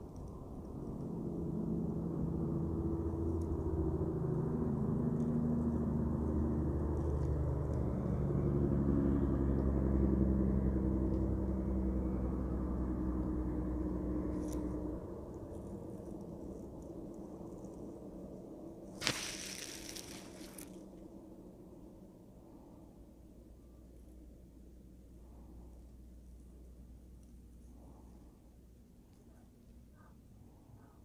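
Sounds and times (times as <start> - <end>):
engine rumbling: 0.0 - 23.4.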